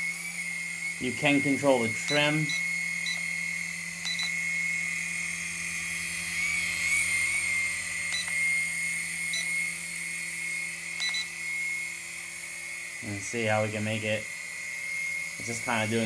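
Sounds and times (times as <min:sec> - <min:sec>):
helicopter rotor motor whine: 0:00.0 - 0:16.0
short high beeps: 0:04.0 - 0:04.4, 0:11.0 - 0:11.3.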